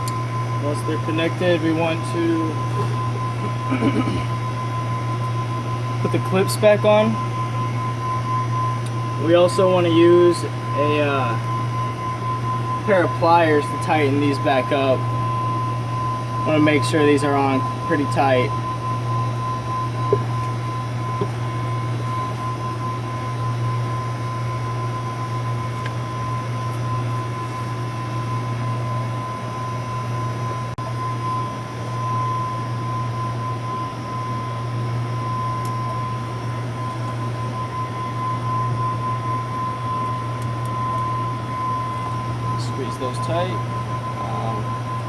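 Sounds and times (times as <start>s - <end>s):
machine hum: 0.0s - 45.0s
thin high whine: 0.0s - 45.0s.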